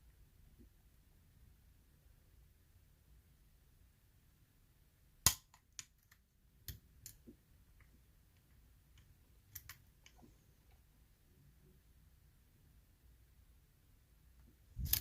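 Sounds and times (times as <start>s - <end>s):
lock picking metallic clicks: 9.0s - 10.2s.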